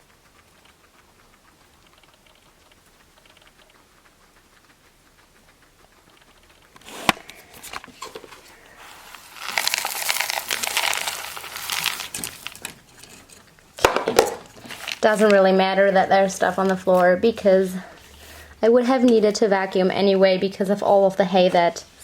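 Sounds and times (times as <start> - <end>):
dry flakes rustling in a box: 7.6 - 13.4, 14.2 - 15.4.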